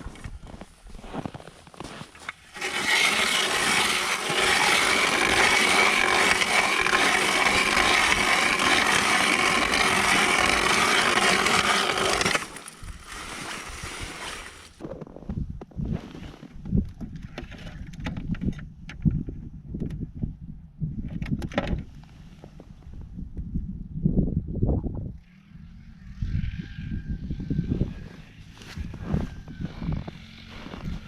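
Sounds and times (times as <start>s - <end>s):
power ice auger drilling: 1.8s - 14.8s.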